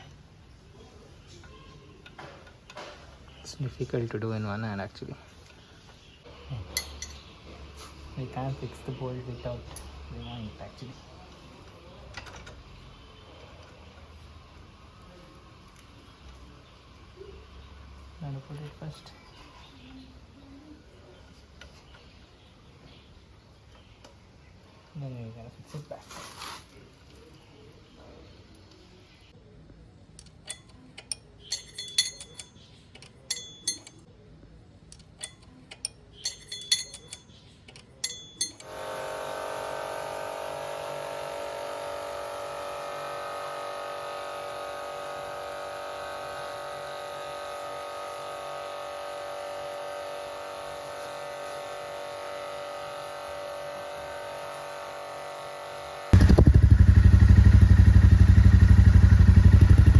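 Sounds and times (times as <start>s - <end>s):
metal tool clicks and clinks: 6.8s - 7.3s, 30.2s - 34.1s, 34.9s - 38.7s
motorcycle engine running: 38.6s - 59.9s.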